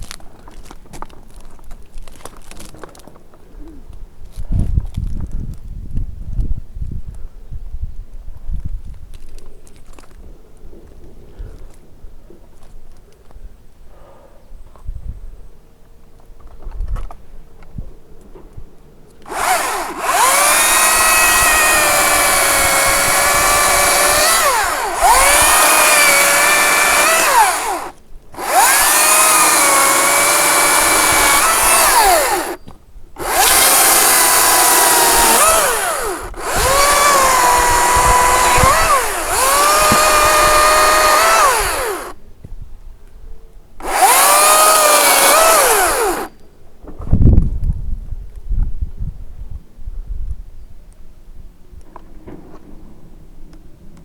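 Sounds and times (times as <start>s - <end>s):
electric chainsaw cutting branches: 19.2s - 42.2s, 43.8s - 46.4s.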